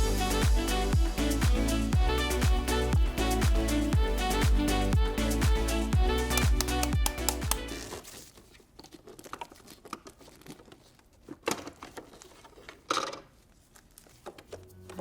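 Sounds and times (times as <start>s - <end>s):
plastic parts clicking and tapping: 6.3s - 7.7s
crinkling: 6.8s - 15.0s
rustling scrapes: 7.7s - 14.9s.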